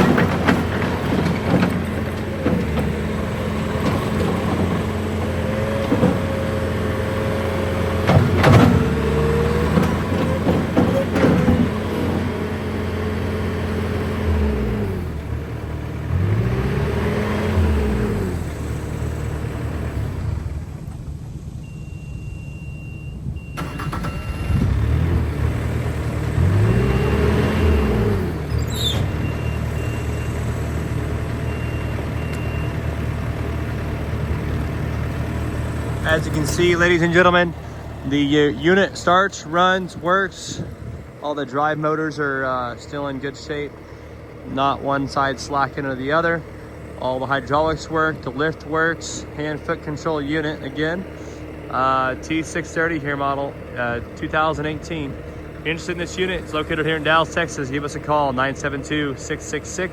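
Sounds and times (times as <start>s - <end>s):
diesel engine running: 0.0s - 59.9s
backup alarm beeping: 21.6s - 24.6s.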